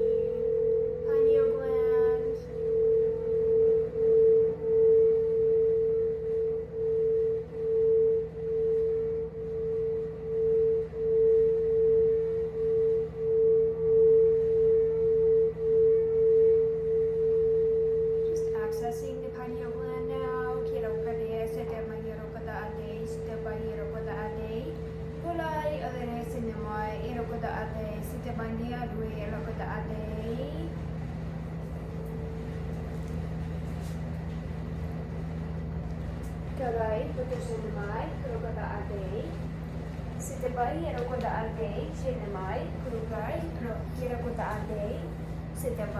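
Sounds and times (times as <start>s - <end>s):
crystal singing bowl tone: 0.0s - 30.8s, 40.2s - 45.9s.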